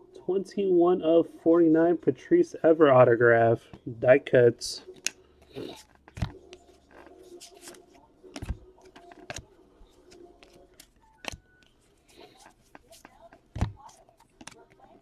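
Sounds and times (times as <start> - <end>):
cards being flipped by hand: 4.9 - 15.0.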